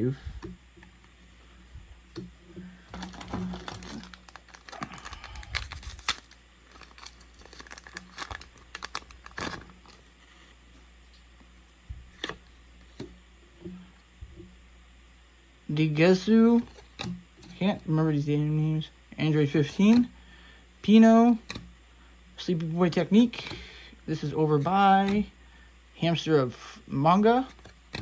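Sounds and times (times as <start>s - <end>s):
foil wrapper tearing and crinkling: 2.9s - 10.0s.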